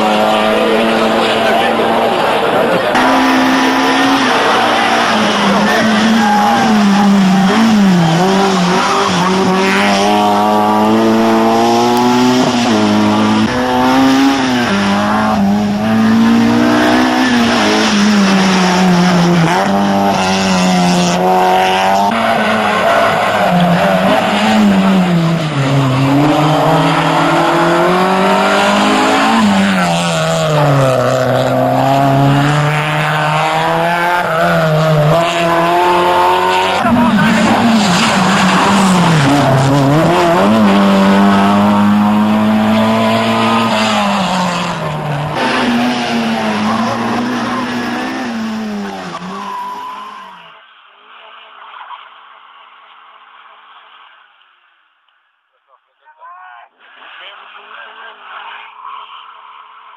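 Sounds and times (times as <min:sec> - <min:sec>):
car engine revving: 0:00.0 - 0:50.5.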